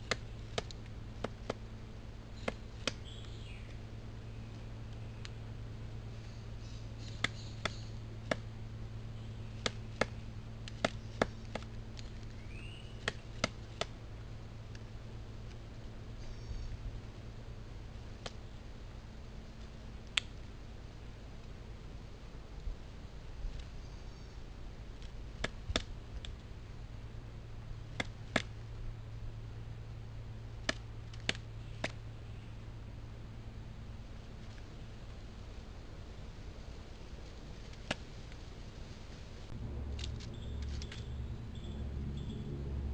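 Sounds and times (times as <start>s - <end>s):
woodpecker pecking on tree: 0.0s - 3.4s, 6.6s - 8.5s, 9.4s - 14.0s, 23.6s - 26.5s, 27.8s - 28.6s
low steady hum: 0.0s - 42.9s.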